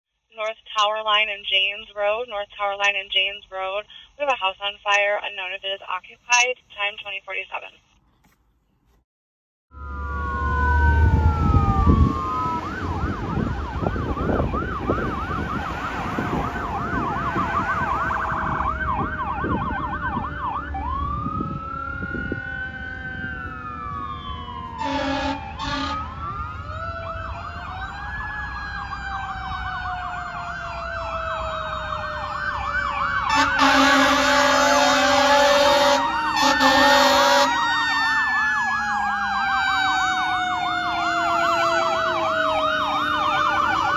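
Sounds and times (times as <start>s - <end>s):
fire engine siren: 9.7s - 43.9s
air horn blasts: 24.8s - 26.1s, 33.3s - 37.6s.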